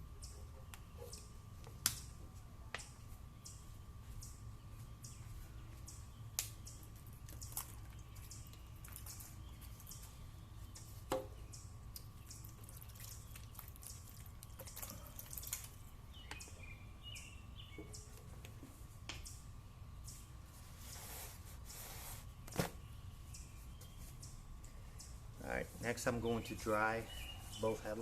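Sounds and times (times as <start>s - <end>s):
water dripping and splashing: 7.0s - 10.1s, 11.9s - 15.9s.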